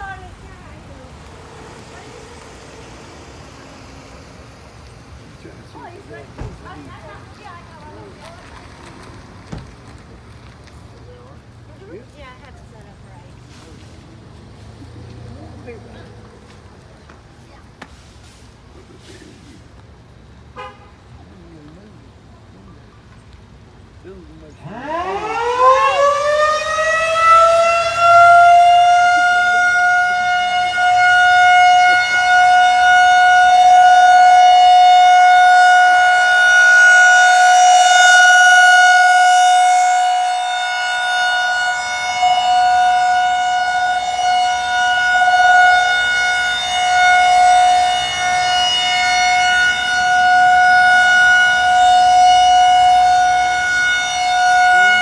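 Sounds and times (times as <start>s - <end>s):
outdoor warning siren: 0.0s - 19.5s, 24.0s - 55.0s.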